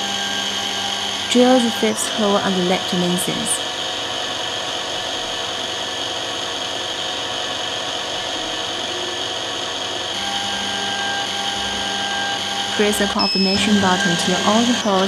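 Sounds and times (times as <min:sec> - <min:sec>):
drill spindle whining: 0:00.0 - 0:15.0
low steady hum: 0:08.0 - 0:15.0.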